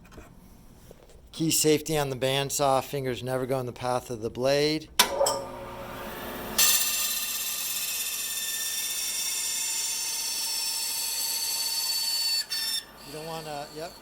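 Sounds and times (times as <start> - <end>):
bandsaw switch click: 5.0 - 5.4
bandsaw cutting wood: 5.8 - 14.0.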